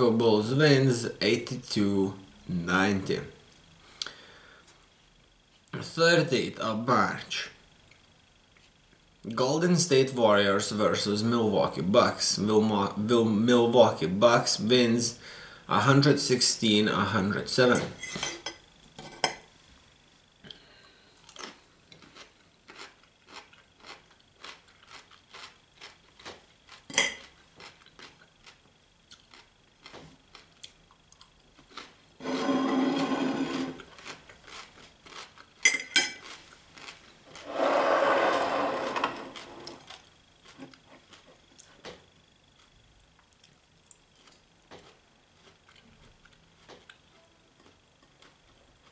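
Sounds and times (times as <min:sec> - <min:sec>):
loud rasping noise: 0:32.2 - 0:33.8, 0:37.4 - 0:39.8.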